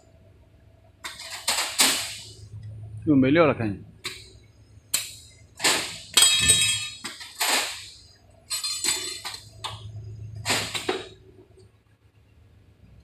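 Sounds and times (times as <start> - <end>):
machine low hum: 2.2 - 7.0, 8.1 - 13.0
steel bars clanking: 4.9 - 11.1.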